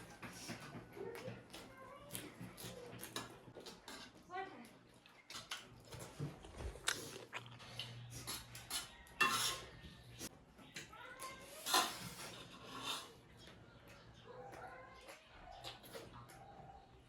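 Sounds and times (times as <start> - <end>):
dishes and cutlery clinking: 0.0 - 4.2, 5.0 - 6.7, 7.7 - 13.6
chewing and mouth smacking: 5.0 - 9.0, 15.0 - 16.4.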